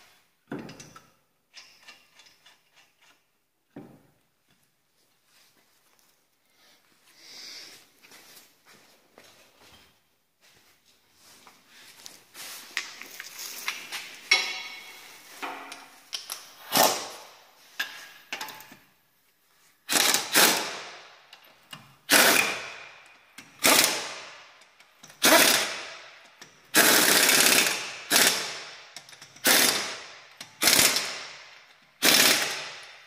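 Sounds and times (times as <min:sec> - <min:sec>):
metallic clicks and clanks: 0:00.5 - 0:03.3, 0:12.8 - 0:17.1
loud short tool bursts: 0:16.6 - 0:17.4, 0:19.9 - 0:21.0, 0:22.1 - 0:22.8, 0:23.6 - 0:24.3, 0:25.2 - 0:26.0, 0:26.7 - 0:28.8, 0:29.4 - 0:31.4, 0:32.0 - 0:32.9.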